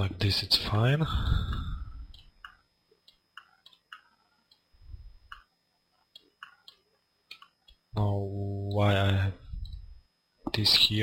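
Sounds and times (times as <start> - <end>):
faint computer clicking: 1.5 - 10.6.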